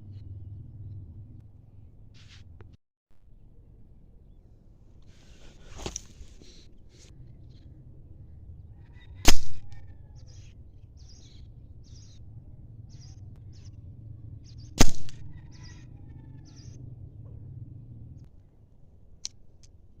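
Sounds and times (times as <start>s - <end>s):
birds chirping faintly: 3.4s - 20.0s
air rifle shots: 9.2s - 9.6s, 14.8s - 15.3s.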